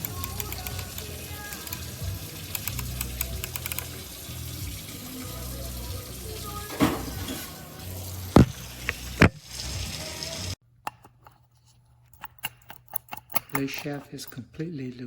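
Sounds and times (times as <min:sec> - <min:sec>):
coffee grinder knocks and clunks: 0:08.4 - 0:09.4.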